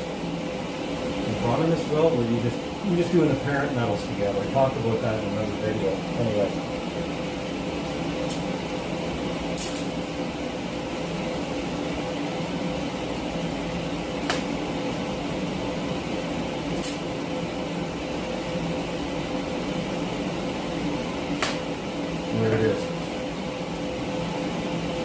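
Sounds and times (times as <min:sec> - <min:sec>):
welder buzzing hum and hiss: 0:00.0 - 0:25.0.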